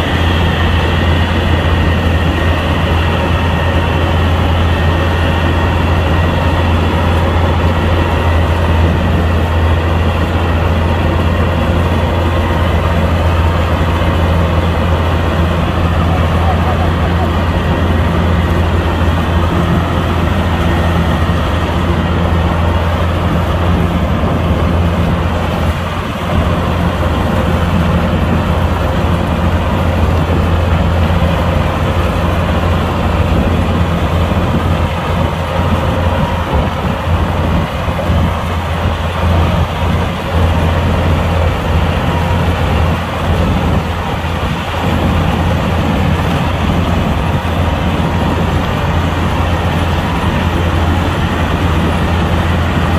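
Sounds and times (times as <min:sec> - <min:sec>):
combine harvester diesel engine: 0:00.0 - 0:52.9.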